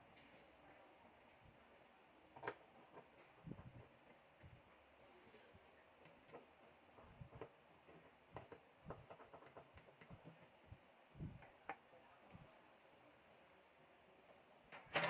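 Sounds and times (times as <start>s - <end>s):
clicks and taps of computer parts: 7.3s - 10.5s.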